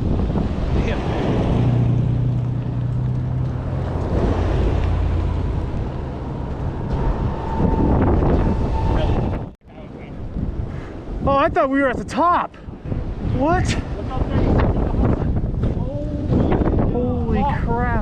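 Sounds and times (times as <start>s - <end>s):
low hum: 0.0s - 9.6s
wind buffeting microphone: 0.0s - 18.0s.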